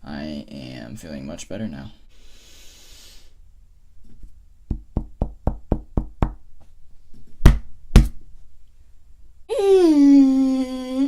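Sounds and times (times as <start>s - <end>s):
knocking on a hard surface: 4.7s - 6.4s.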